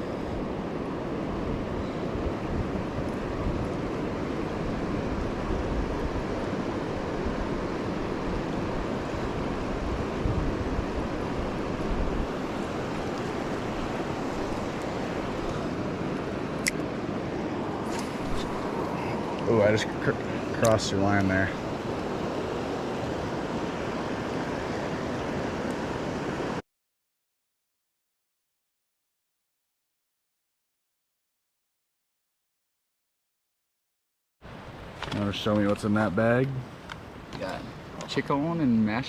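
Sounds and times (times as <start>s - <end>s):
fast-flowing river water rushing: 0.3s - 26.6s.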